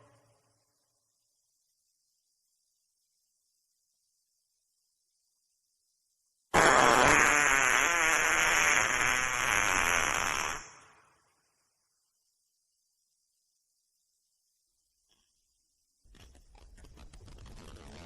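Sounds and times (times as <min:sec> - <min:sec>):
long wet fart: 0:06.5 - 0:10.6.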